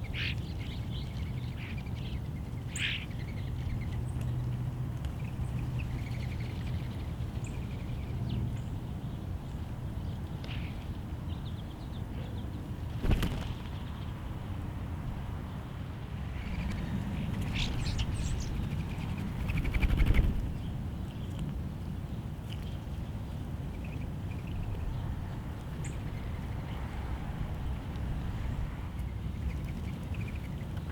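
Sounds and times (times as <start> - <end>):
small birds chirping: 5.0 - 14.3, 16.4 - 21.4
flurry of wingbeats: 12.9 - 14.0, 17.4 - 20.6.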